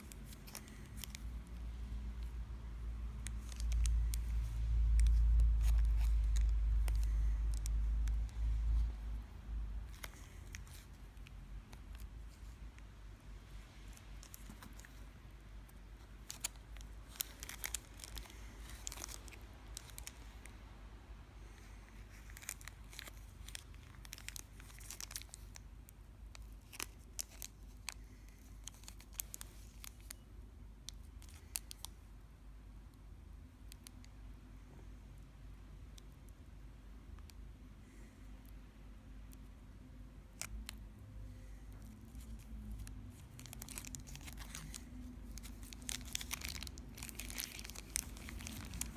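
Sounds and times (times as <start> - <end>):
plastic wrapping crinkling: 0.0 - 9.1, 9.8 - 12.6, 13.5 - 20.5, 22.0 - 25.6, 26.3 - 30.2, 41.7 - 48.9.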